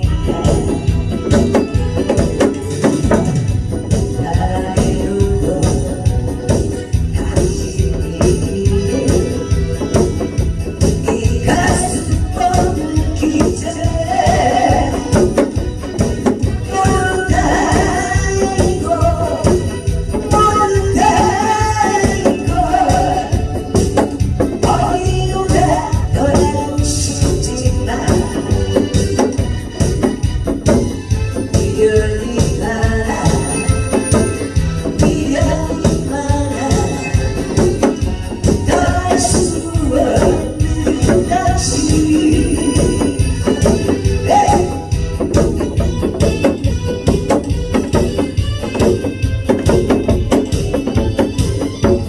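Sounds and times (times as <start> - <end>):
electronic organ with disco beat: 0.0 - 52.0
person singing: 0.0 - 52.0.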